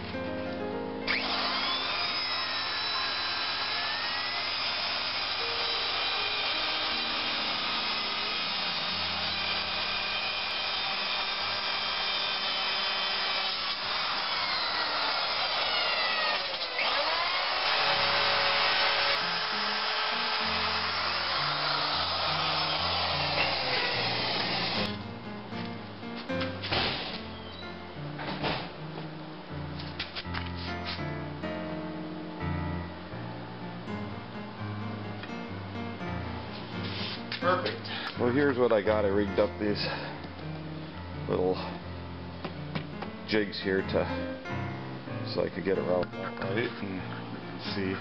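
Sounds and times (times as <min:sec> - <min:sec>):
router cutting wood: 0:01.1 - 0:25.0.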